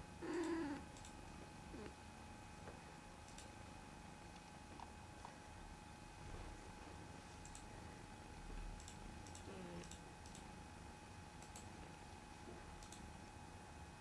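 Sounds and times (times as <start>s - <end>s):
faint steady whine: 0.0s - 14.0s
faint clicks: 0.3s - 1.2s, 3.2s - 3.5s, 7.4s - 7.7s, 8.8s - 10.5s, 11.4s - 11.7s, 12.8s - 13.1s.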